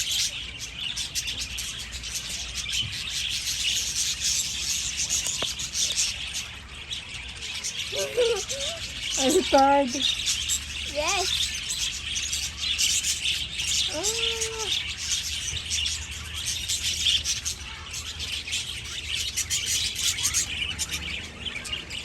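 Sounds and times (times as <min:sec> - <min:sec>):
budgerigars chattering: 0:00.0 - 0:22.0.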